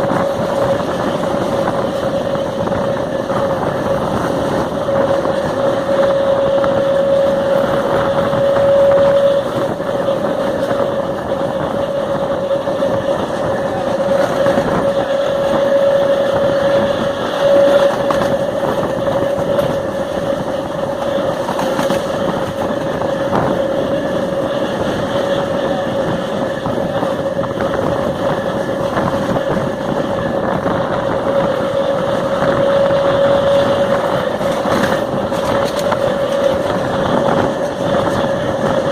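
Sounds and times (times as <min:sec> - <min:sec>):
train motors growling and whining: 0:00.0 - 0:38.9
wheel and rail rumble: 0:00.0 - 0:38.9.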